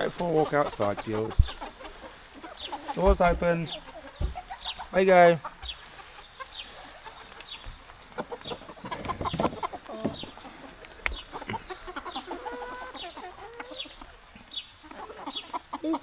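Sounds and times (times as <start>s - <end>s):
hens clucking: 0.0s - 16.0s
light knocks: 4.2s - 4.7s, 8.8s - 10.4s.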